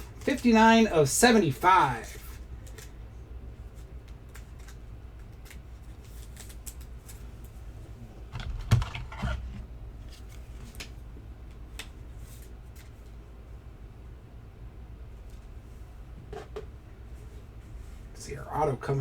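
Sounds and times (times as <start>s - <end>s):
steady low hum: 0.0s - 19.0s
card rustle: 3.7s - 7.6s, 8.3s - 10.9s.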